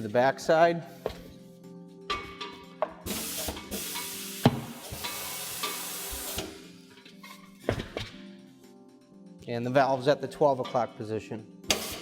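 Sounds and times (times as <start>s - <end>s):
background music: 0.0s - 12.0s
compressed air hissing: 3.0s - 6.7s, 11.7s - 12.0s.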